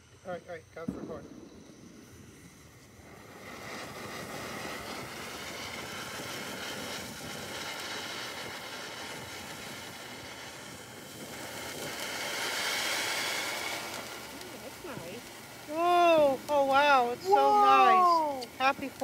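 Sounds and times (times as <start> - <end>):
firework fountain hissing: 0.0 - 19.0.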